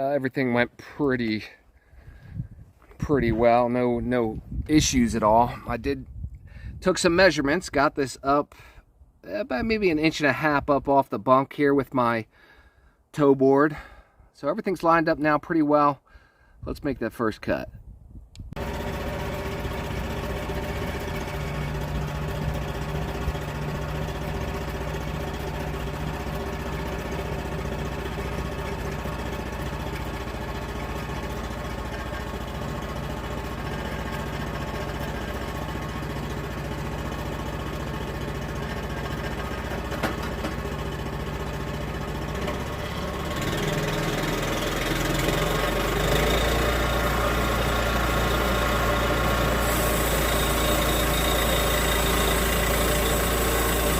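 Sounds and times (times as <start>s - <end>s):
sawmill gasoline engine running: 18.6s - 53.9s.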